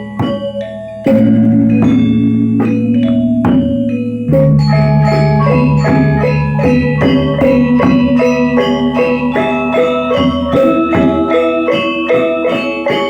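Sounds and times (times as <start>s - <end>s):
metallophones ringing notes: 0.0s - 13.0s
sustained low tone: 1.1s - 9.2s.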